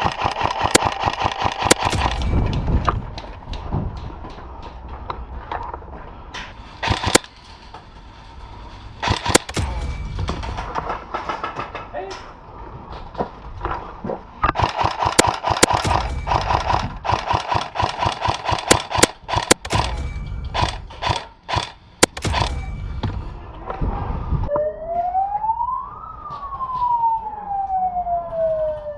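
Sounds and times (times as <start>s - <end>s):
airsoft guns firing: 0.0s - 3.0s, 6.8s - 7.3s, 9.0s - 9.8s, 14.6s - 20.0s, 20.6s - 22.6s
siren rising and falling: 23.9s - 28.9s.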